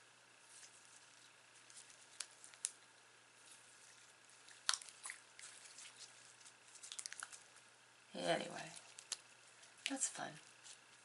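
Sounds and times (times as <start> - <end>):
slime squishing with wet clicks: 4.4 - 6.0, 6.8 - 7.4.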